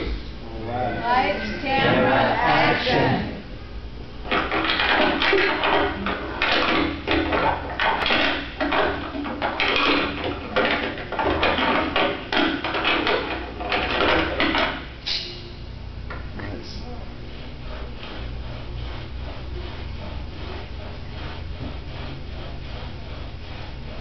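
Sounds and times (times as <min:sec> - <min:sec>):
props knocking and clattering: 0:04.2 - 0:14.9.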